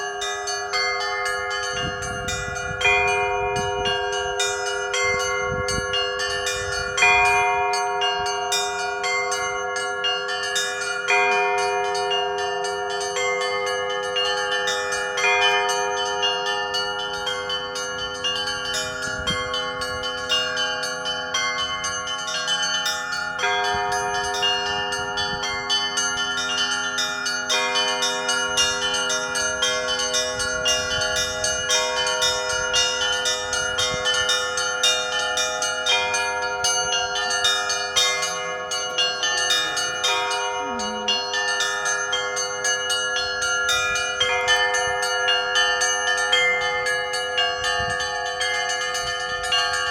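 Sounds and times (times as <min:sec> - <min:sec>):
large bells ringing: 0:00.0 - 0:49.9
small bells struck rapidly: 0:00.0 - 0:49.9
heavy bell stroke: 0:15.2 - 0:49.9.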